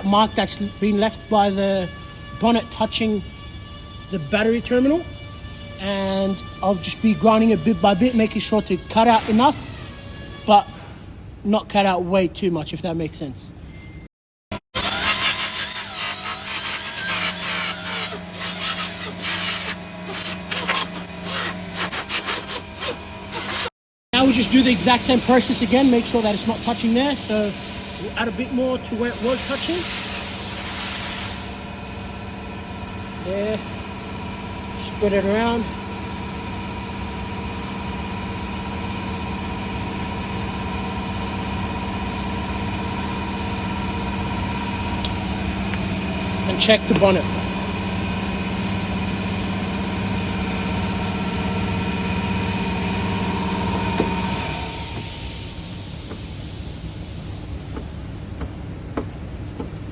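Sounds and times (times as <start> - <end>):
grinder cutting carbon fibre: 14.8 - 27.5
machine hum: 14.8 - 30.5, 31.3 - 59.9
power grinder motor: 14.8 - 30.6, 44.9 - 58.0.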